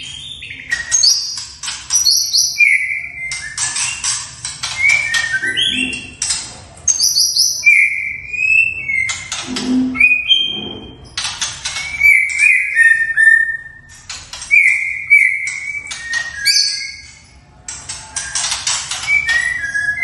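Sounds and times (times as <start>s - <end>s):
bird singing whistled phrases: 4.8s - 6.1s, 6.9s - 9.2s, 9.9s - 10.8s, 11.8s - 13.8s, 14.5s - 17.2s, 18.2s - 20.0s.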